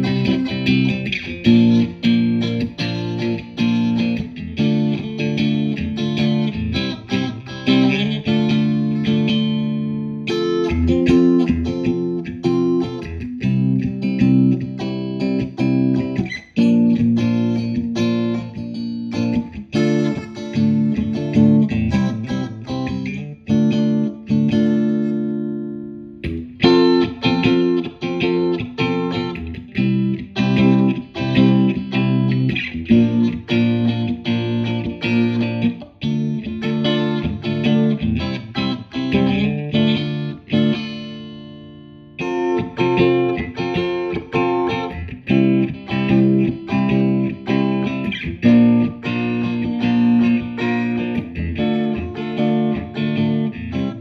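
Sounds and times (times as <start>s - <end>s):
clean electric guitar riff: 0.0s - 54.0s.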